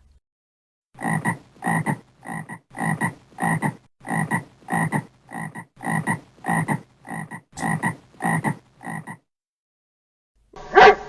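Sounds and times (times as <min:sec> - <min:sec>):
frog croaking: 0:01.0 - 0:09.3.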